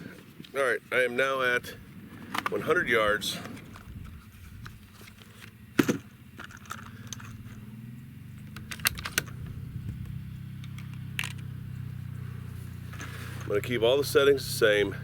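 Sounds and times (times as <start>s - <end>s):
quad bike engine drone: 1.6s - 15.0s.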